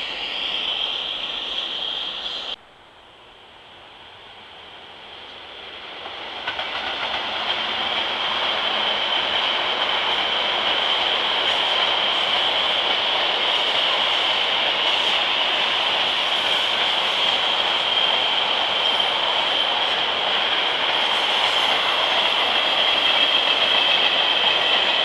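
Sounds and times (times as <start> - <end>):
train wheels rumbling on rails: 4.6 - 25.0.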